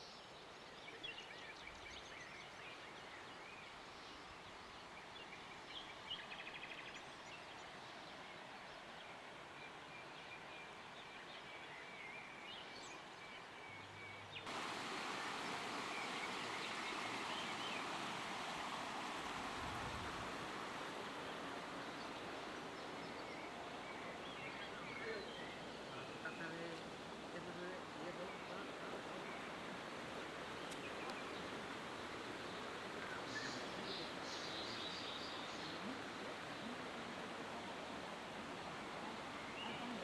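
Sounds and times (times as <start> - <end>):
storm rushing hiss: 14.5 - 24.2
faint bird chirps: 14.5 - 40.0.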